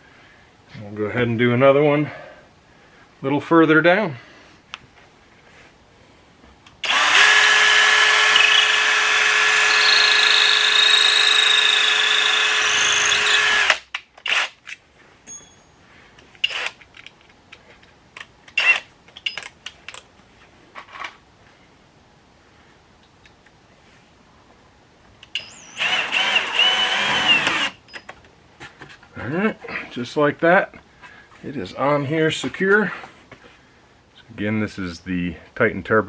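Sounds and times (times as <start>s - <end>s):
power drill running: 6.8s - 14.4s, 25.4s - 28.0s.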